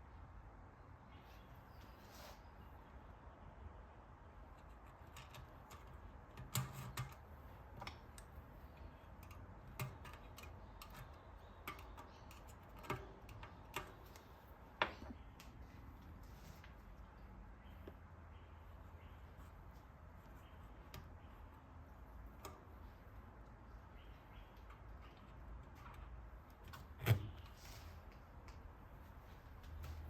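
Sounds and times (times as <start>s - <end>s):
light clicks and knocks: 4.5s - 15.6s.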